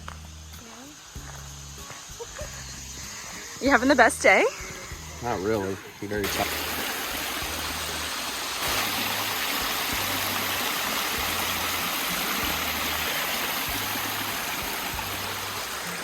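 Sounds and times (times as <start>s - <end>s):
stream water flowing: 3.5s - 16.0s.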